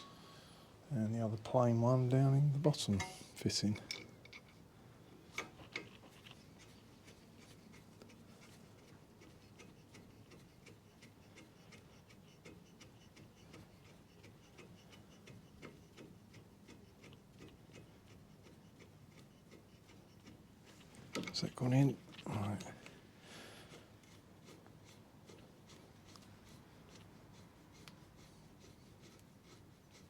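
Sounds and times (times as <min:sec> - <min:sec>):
small metal clicks and ticks: 0:12.4 - 0:18.2.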